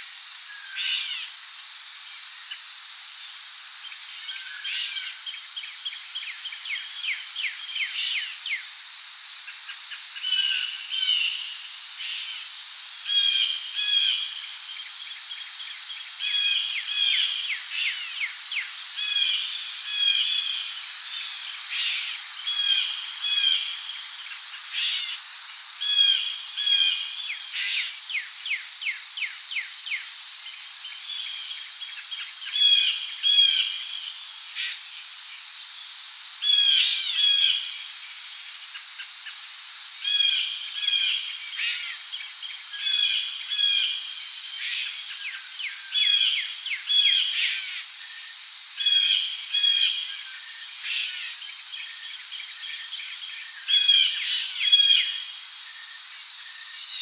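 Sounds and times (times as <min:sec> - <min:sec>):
insects droning: 0:00.0 - 0:57.0.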